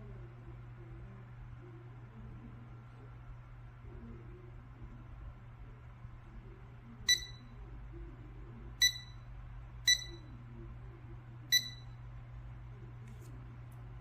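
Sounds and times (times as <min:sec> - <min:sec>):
short high electronic beeps: 0:07.1 - 0:07.4, 0:08.8 - 0:09.2, 0:09.9 - 0:10.2, 0:11.5 - 0:11.9.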